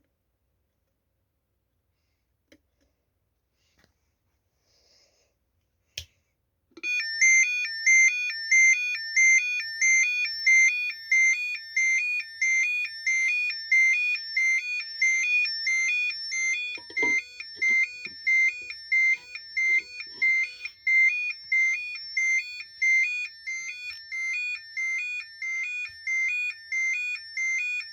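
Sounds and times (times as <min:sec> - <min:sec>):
alternating two-pitch alarm beeping: 0:06.8 - 0:27.9.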